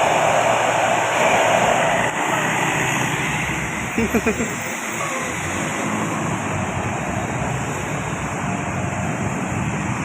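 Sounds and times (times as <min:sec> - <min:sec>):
passing vehicles: 0:00.0 - 0:10.0
wind: 0:00.0 - 0:10.0.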